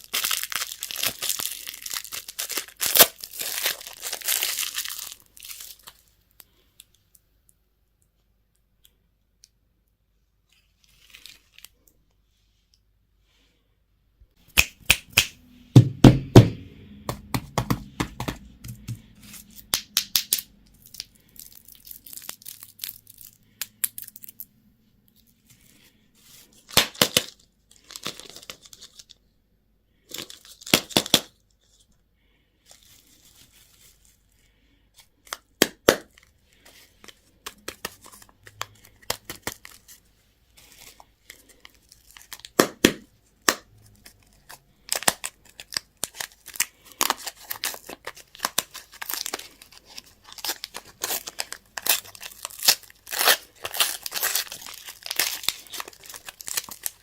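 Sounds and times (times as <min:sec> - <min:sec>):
wrappers tearing and crinkling: 0:00.0 - 0:06.2, 0:10.8 - 0:11.8, 0:19.0 - 0:24.4, 0:26.4 - 0:29.2, 0:30.1 - 0:31.3, 0:36.1 - 0:40.0, 0:40.6 - 0:42.7, 0:43.9 - 0:57.0.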